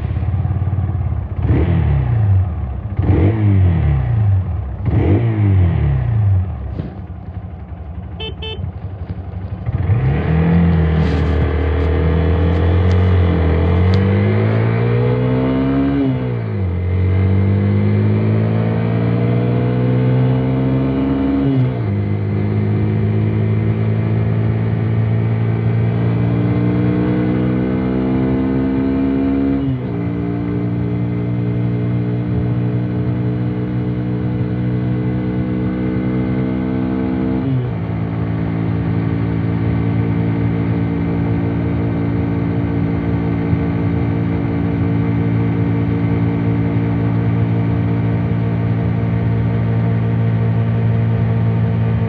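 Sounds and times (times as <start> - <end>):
motorcycle accelerating: 0.0 - 52.0
motorcycle engine revving: 0.0 - 52.0
motorcycle engine idling: 6.6 - 9.7.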